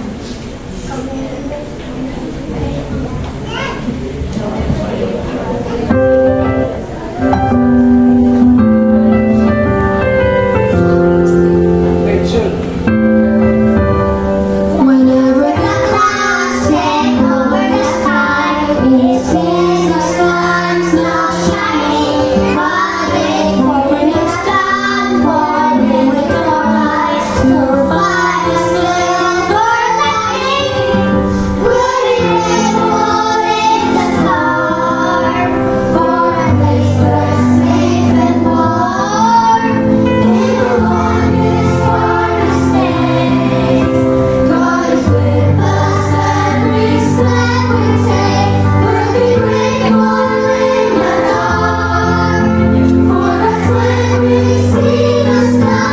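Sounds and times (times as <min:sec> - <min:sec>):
instrumental accompaniment: 0:03.0 - 0:55.9
children singing: 0:14.3 - 0:55.9.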